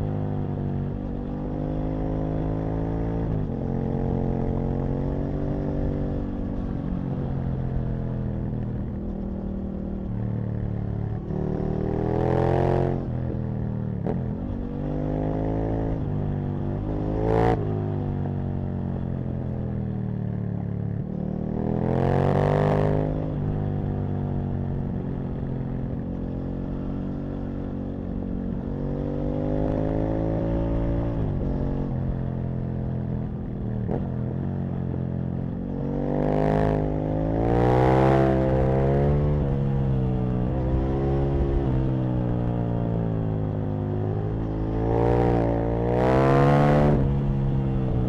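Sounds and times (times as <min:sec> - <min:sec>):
motorcycle engine revving: 0:21.0 - 0:48.0.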